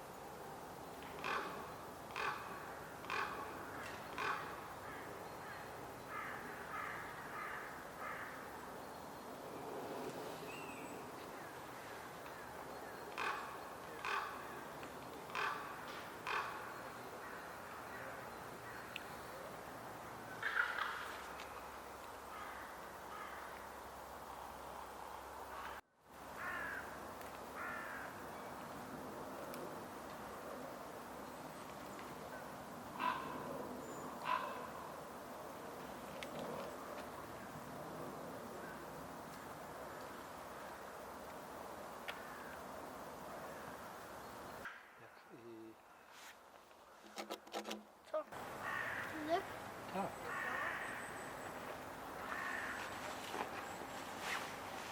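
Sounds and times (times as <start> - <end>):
faint steady hiss: 0.0 - 47.0
ravens cawing: 1.2 - 8.5, 13.2 - 14.7, 15.3 - 18.9, 20.4 - 21.2, 22.3 - 23.6, 26.4 - 27.0, 27.6 - 28.2, 33.0 - 33.4, 34.2 - 34.9, 48.4 - 53.5.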